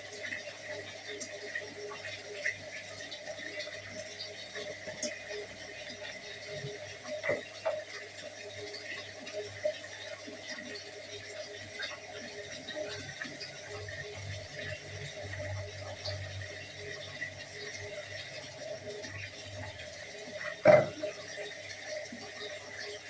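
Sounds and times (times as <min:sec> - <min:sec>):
dishes clinking at a sink: 0:07.2 - 0:07.9, 0:20.4 - 0:21.2.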